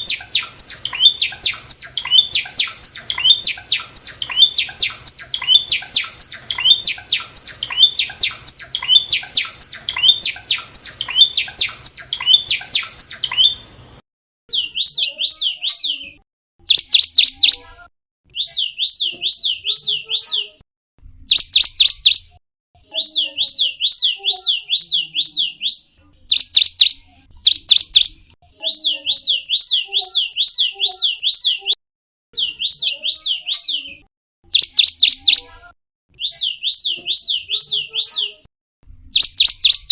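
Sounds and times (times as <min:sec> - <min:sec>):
bird singing high sweeping notes: 0:00.0 - 0:13.7.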